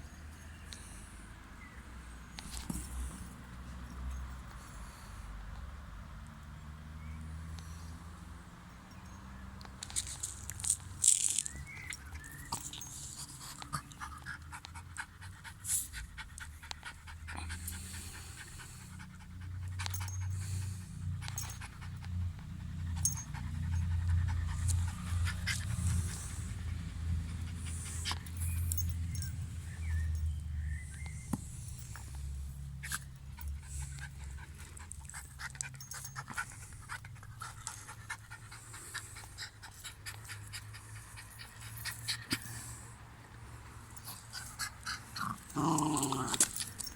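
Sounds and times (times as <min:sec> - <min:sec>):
dog panting hard: 0:13.1 - 0:28.6, 0:33.2 - 0:42.7.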